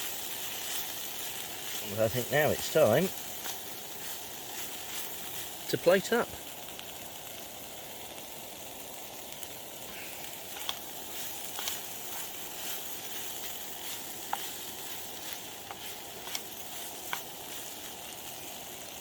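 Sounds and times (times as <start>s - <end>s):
food sizzling in a frying pan: 0.0s - 19.0s
sharp pops: 10.4s - 18.0s.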